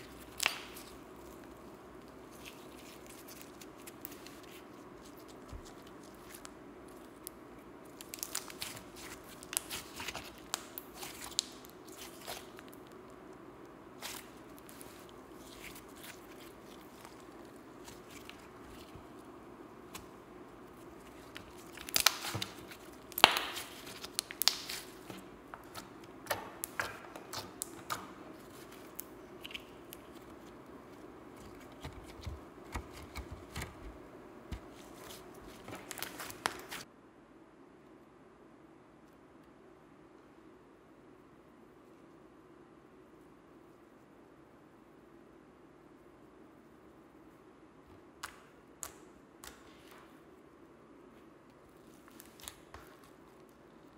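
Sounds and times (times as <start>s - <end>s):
slime squished by hand: 0.0s - 13.1s, 14.0s - 33.9s, 34.5s - 36.8s, 51.8s - 53.3s.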